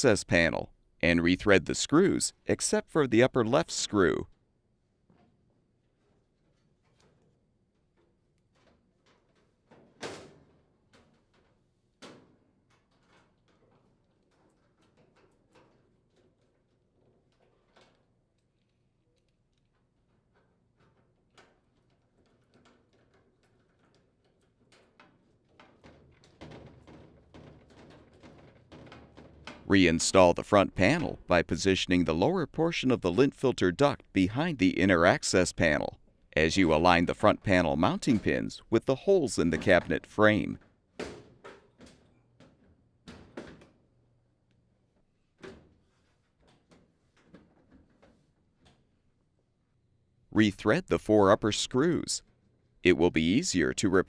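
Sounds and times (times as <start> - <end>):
clicks and knocks on sheet metal: 20.2 - 29.7.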